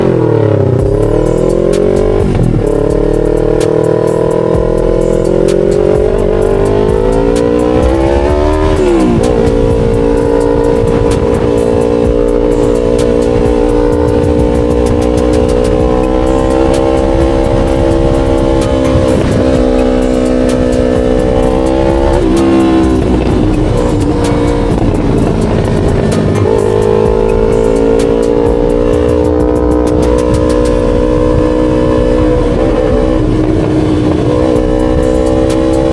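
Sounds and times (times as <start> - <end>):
motorcycle engine under way: 0.0 - 35.9.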